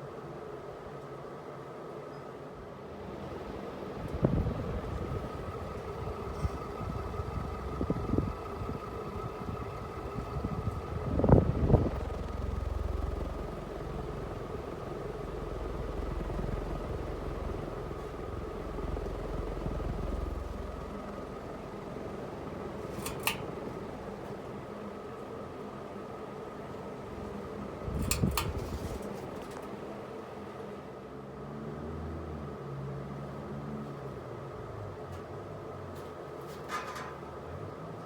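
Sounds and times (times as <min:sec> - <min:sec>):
ceiling fan motor humming: 0:00.0 - 0:31.5
sharp click: 0:23.0 - 0:23.5, 0:28.0 - 0:29.2.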